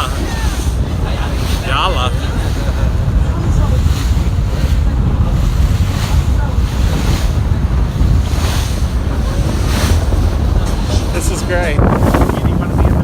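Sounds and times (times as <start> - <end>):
water rushing around hull: 0.0 - 13.0
wind buffeting microphone: 0.0 - 13.0.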